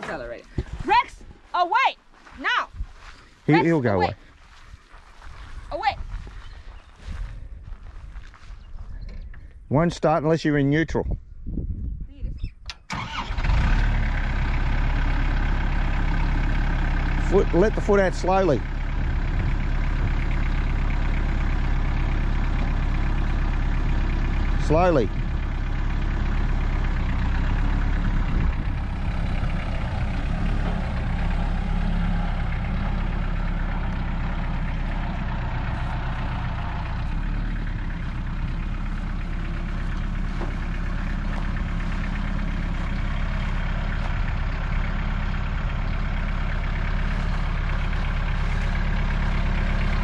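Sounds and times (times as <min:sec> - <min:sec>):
tractor engine running: 0:12.7 - 0:50.0.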